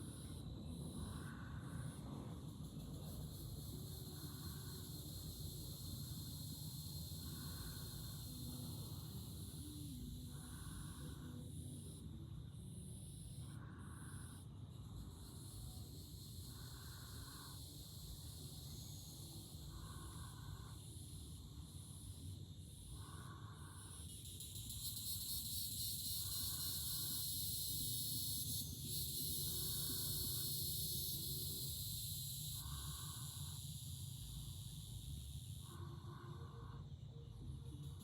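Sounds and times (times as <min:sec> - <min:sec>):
insects trilling: 0:00.0 - 0:38.0.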